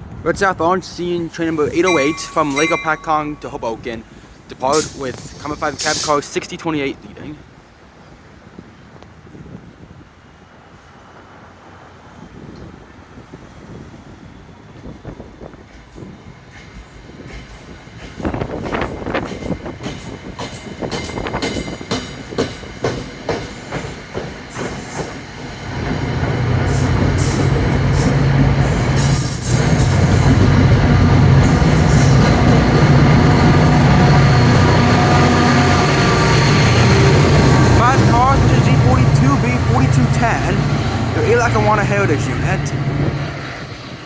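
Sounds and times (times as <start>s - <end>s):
diesel locomotive engine: 0.0s - 9.3s, 10.2s - 44.0s
train cars clicking over rail joints: 15.5s - 41.5s
train wheels squealing: 26.7s - 30.4s.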